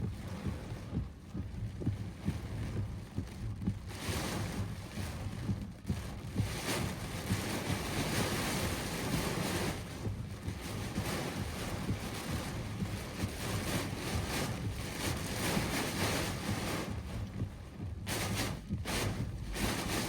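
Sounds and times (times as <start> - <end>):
storm wind buffeting microphone: 0.0 - 20.0
heavy rain hissing: 18.1 - 20.0.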